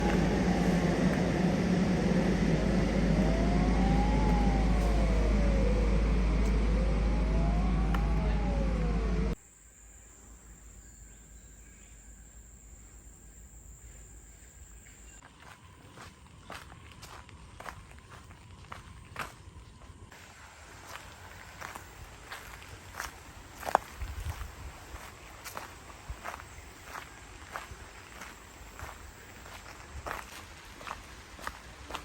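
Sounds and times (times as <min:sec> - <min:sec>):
heavy low rumble: 0:00.0 - 0:09.4
warning siren wailing: 0:00.0 - 0:09.4
faint high-pitched tone: 0:00.0 - 0:15.0.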